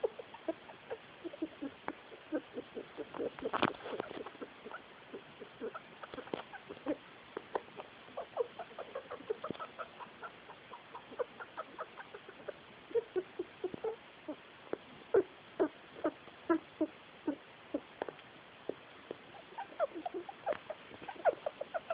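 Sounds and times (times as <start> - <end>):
rat squeaking and chirping: 0.0 - 7.0, 7.7 - 14.4, 18.7 - 21.9.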